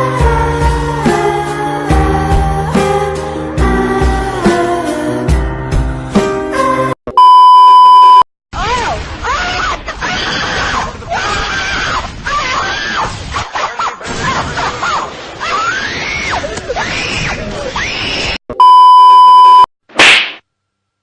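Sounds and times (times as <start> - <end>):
censor bleep tone: 7.1 - 8.3, 18.6 - 19.7.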